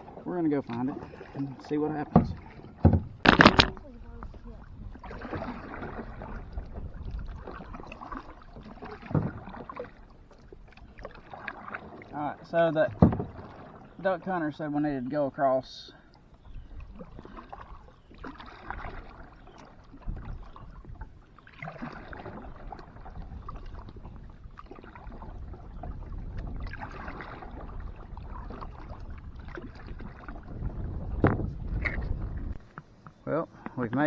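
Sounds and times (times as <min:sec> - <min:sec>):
paddle strokes splashing water: 0:00.0 - 0:34.0
loud thump: 0:02.2 - 0:03.8, 0:12.9 - 0:13.4.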